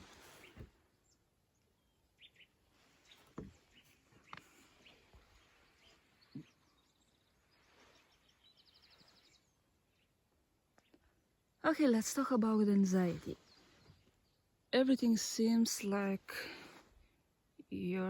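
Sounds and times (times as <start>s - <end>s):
faint bird chirps: 0.0s - 11.6s, 13.0s - 14.8s.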